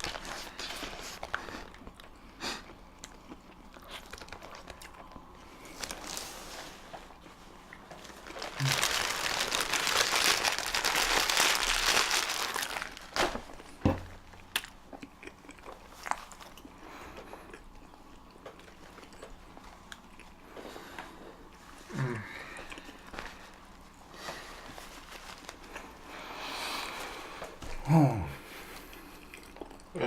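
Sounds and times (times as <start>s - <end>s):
paper wrapping crumpling: 0.0s - 1.4s, 3.8s - 4.8s, 5.6s - 6.9s, 7.9s - 13.7s, 24.7s - 25.8s.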